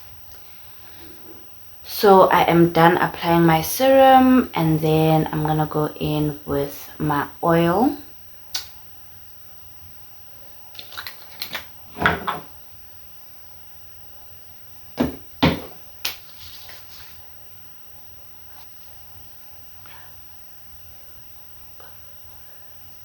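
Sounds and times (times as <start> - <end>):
loud thud: 15.0 - 15.8.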